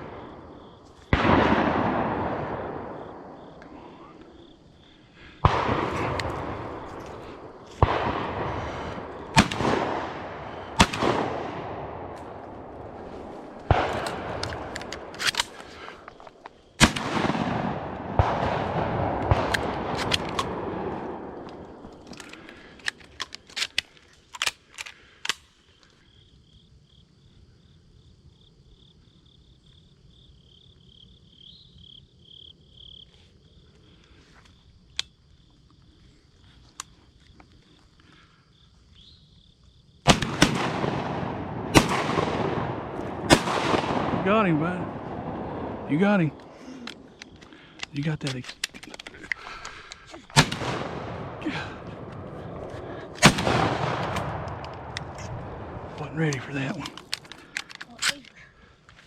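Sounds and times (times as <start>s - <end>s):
shotgun shots echoing: 0.0s - 4.6s, 5.2s - 16.0s, 16.8s - 22.8s, 40.1s - 57.5s
crickets trilling: 0.0s - 59.0s.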